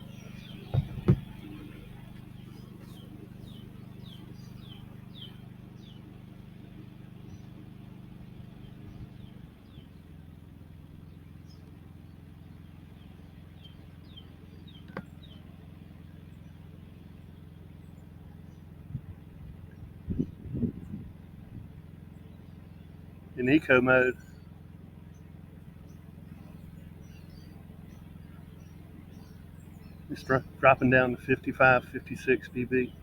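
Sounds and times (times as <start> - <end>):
birds chirping: 0.0 - 7.6, 21.9 - 33.0
inverter generator running: 0.0 - 33.0.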